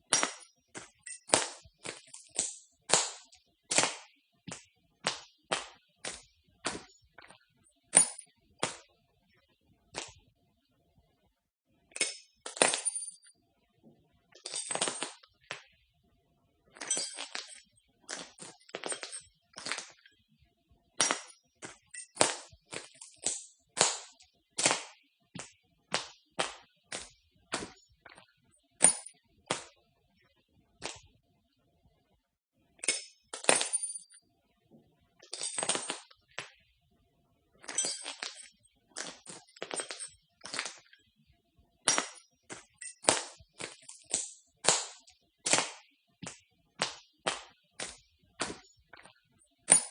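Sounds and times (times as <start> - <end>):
footsteps crunching broken glass: 37.7 - 40.8.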